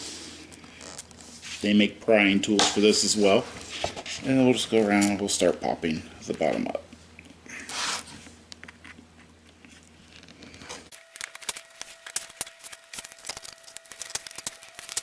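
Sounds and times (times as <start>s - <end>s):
plastic clips clicking and cracking: 10.9s - 15.0s.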